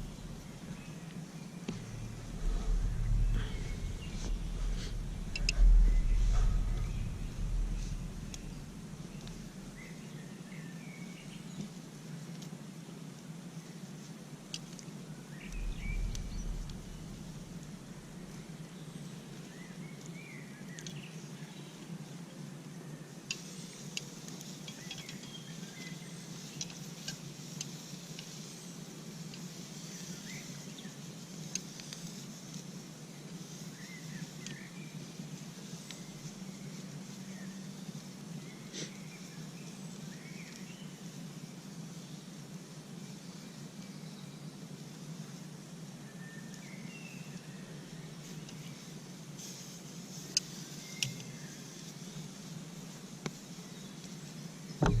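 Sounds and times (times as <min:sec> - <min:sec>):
low rumble: 0:00.0 - 0:01.0, 0:01.7 - 0:10.1, 0:15.4 - 0:18.6
steady low hum: 0:00.0 - 0:10.9, 0:15.2 - 0:19.7, 0:54.8 - 0:55.0
birds chirping: 0:00.0 - 0:11.6, 0:15.3 - 0:19.8
faint steady hiss: 0:00.0 - 0:55.0.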